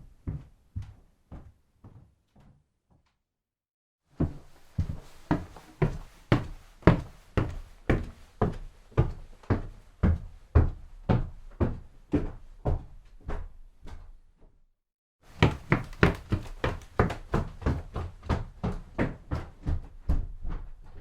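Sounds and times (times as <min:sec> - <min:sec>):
footsteps walking: 0:15.3 - 0:17.1
fast footsteps: 0:15.3 - 0:21.0.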